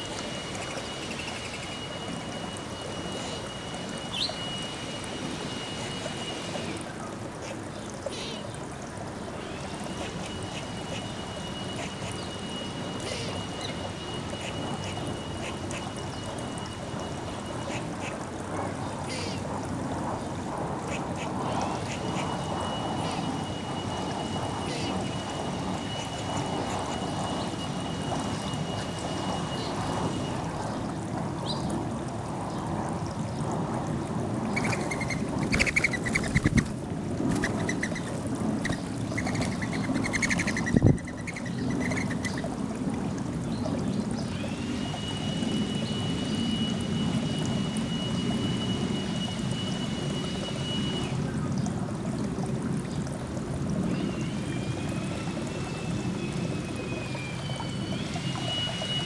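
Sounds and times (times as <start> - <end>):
thin high tone: 0.0 - 6.8, 44.2 - 51.4.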